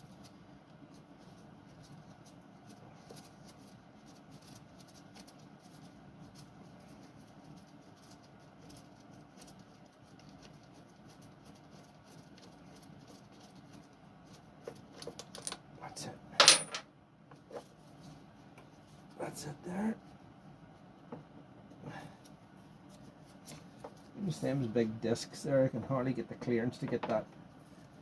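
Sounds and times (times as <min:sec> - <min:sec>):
small clicks and scrapes: 0:00.0 - 0:15.6.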